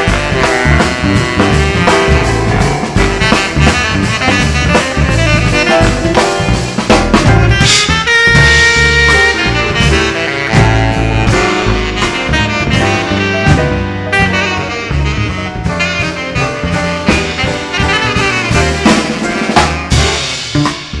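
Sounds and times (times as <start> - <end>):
drum kit: 0.0 - 21.0
horn melody: 0.0 - 21.0.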